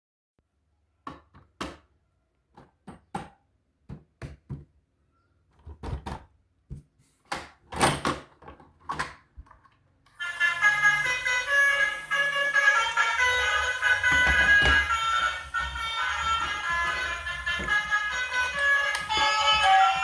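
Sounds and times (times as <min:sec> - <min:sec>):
clattering: 0:13.8 - 0:19.6.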